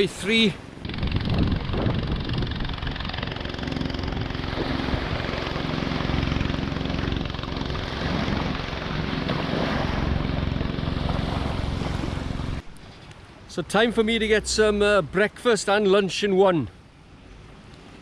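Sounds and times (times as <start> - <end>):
engine drone: 0.6 - 12.7, 13.9 - 15.2.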